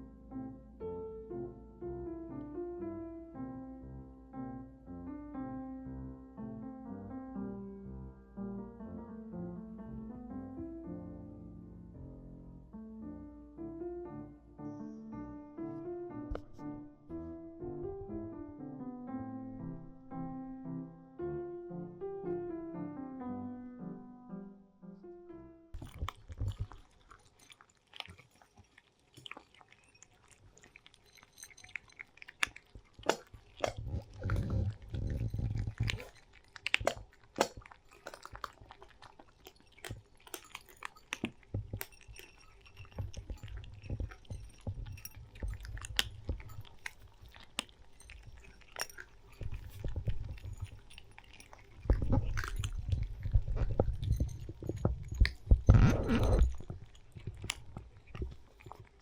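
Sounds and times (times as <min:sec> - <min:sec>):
cats chewing and crunching food: 0:16.3 - 0:16.7, 0:25.8 - 0:59.0.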